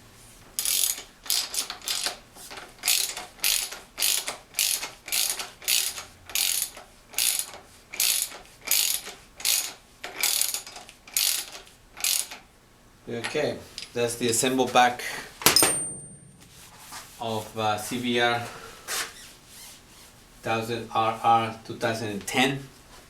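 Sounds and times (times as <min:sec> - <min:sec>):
ratchet wrench clicking: 0:00.6 - 0:02.2, 0:02.8 - 0:12.4.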